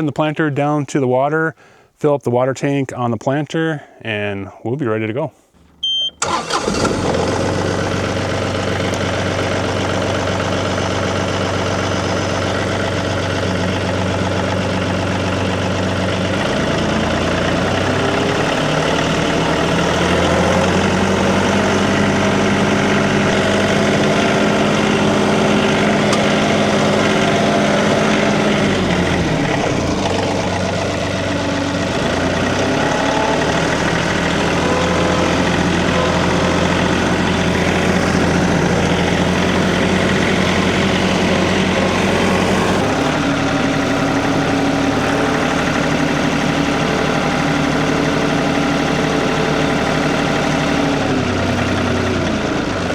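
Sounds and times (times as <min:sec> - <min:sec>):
tractor engine running: 0:02.6 - 0:52.9.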